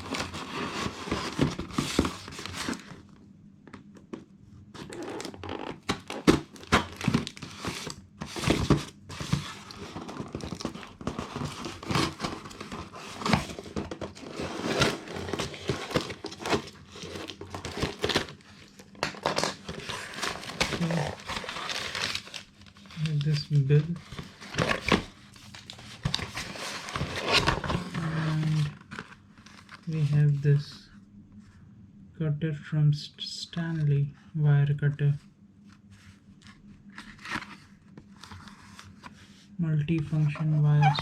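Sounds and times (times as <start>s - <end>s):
packaging crinkling and tearing: 0.0s - 3.1s, 4.8s - 29.9s.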